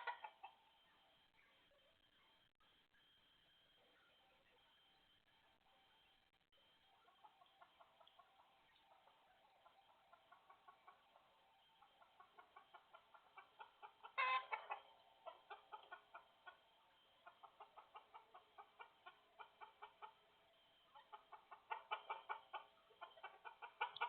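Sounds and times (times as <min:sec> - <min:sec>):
harsh chicken call: 0:00.0 - 0:00.5, 0:12.6 - 0:16.6
chickens clucking: 0:00.0 - 0:01.7, 0:06.9 - 0:24.0.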